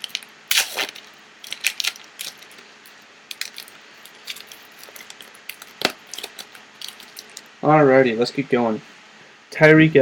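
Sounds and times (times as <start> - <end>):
wrapper crinkling: 0.0 - 2.6, 3.3 - 7.5.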